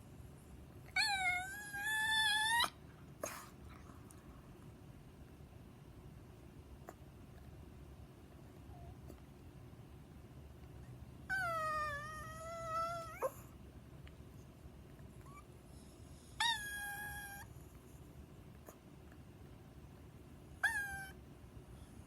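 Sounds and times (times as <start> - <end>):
dog whine-howling: 1.0 - 2.8, 11.3 - 13.4, 16.4 - 17.5, 20.6 - 21.2.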